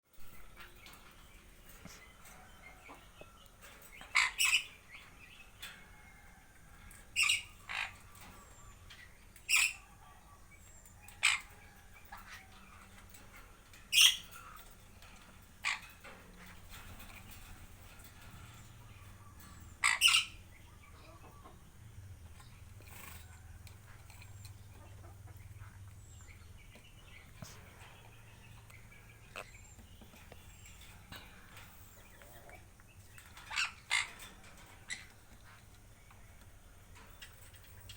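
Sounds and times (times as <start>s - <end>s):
faint chirps: 0.2s - 37.9s
parrots squawking: 4.1s - 4.7s, 7.2s - 8.3s, 9.5s - 9.8s, 11.1s - 13.2s, 19.8s - 20.4s, 33.3s - 35.1s.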